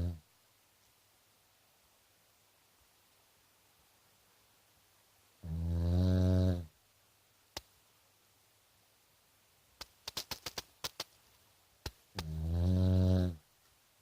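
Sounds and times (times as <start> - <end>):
loud low buzzing snore: 5.4 - 6.7, 12.2 - 13.4
sharp clicks: 9.8 - 11.2.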